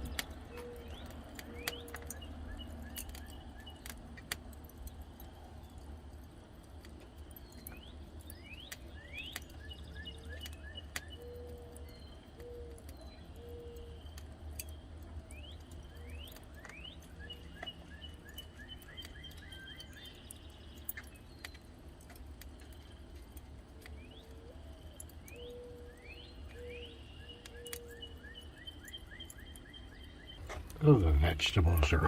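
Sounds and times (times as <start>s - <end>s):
birds chirping and trilling: 0.0s - 4.0s, 7.3s - 23.1s, 23.8s - 32.0s
steady low hum: 30.3s - 32.0s.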